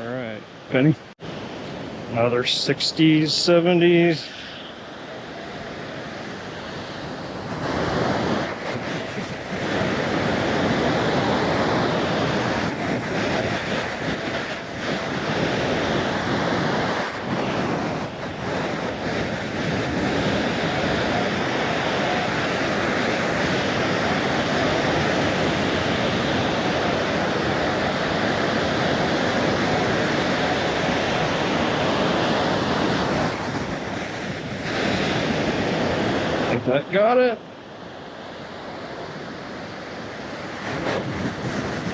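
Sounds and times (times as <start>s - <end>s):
surf washing on shore: 0.0s - 41.9s
wind buffeting microphone: 0.0s - 41.9s.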